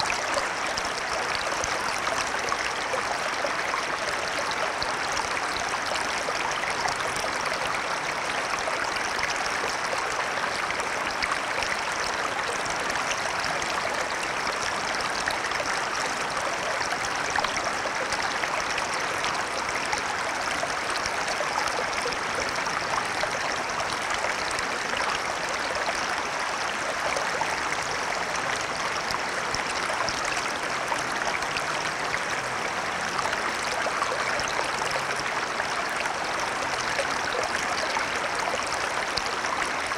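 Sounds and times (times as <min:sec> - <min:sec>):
stream water babbling: 0:00.0 - 0:39.9.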